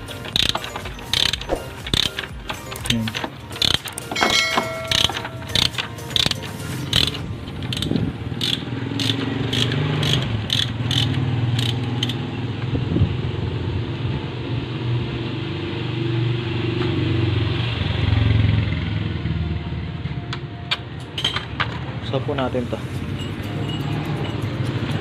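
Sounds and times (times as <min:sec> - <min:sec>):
ratchet tool clicking: 0:00.0 - 0:12.3
vehicle engine humming: 0:00.0 - 0:25.0.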